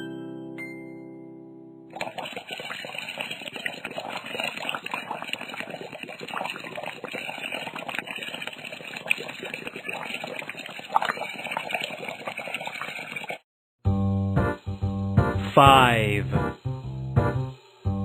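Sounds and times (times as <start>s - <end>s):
watery noise with crackles: 1.9s - 13.4s.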